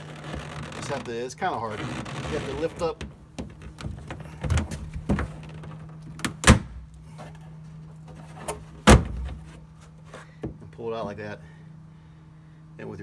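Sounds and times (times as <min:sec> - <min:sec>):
steady low hum: 0:00.0 - 0:13.0
plastic knocks and clunks: 0:01.8 - 0:07.4, 0:08.1 - 0:09.6.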